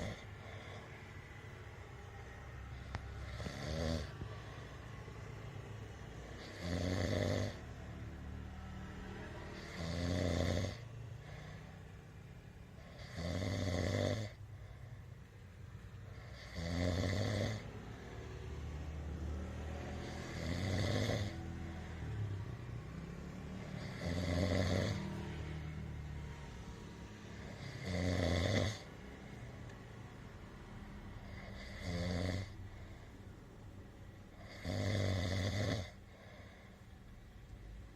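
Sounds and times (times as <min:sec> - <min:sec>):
person snoring: 0:00.0 - 0:02.0, 0:02.6 - 0:05.0, 0:06.2 - 0:07.9, 0:08.5 - 0:11.9, 0:12.8 - 0:14.4, 0:16.1 - 0:18.0, 0:19.3 - 0:22.3, 0:23.2 - 0:25.7, 0:27.2 - 0:29.0, 0:31.1 - 0:33.0, 0:34.3 - 0:36.7.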